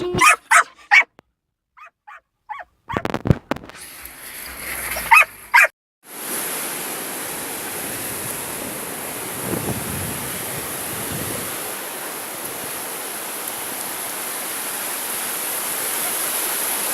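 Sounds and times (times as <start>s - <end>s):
dog barking: 0.2s - 1.1s, 1.8s - 3.1s, 5.0s - 5.7s
thumps: 2.9s - 3.8s
wind and surf: 6.1s - 16.9s.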